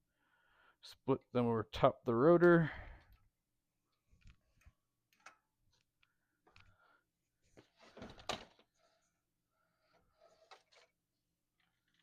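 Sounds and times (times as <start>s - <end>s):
faint clicks of parts: 3.9s - 6.8s, 9.8s - 12.0s.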